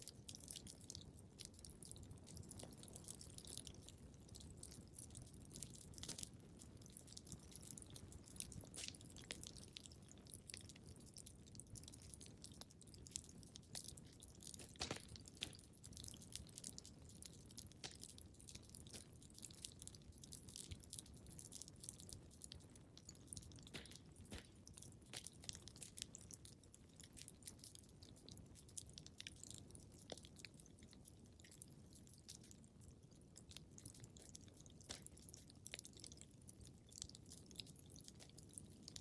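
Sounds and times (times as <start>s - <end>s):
wood fire crackling: 0.1s - 28.6s.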